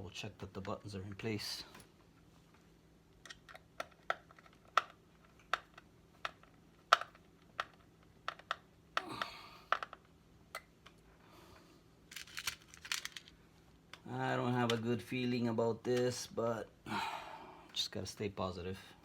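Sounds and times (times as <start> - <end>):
handling rustle: 12.1 - 13.4.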